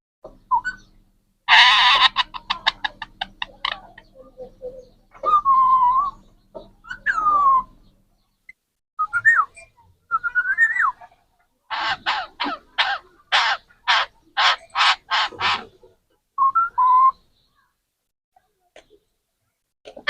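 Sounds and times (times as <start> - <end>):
parrot squawking: 1.5 - 4.0, 11.7 - 15.8.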